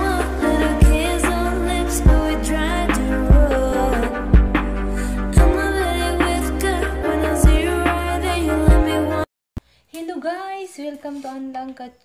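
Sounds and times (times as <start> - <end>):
singing over steady bass: 0.0 - 9.3.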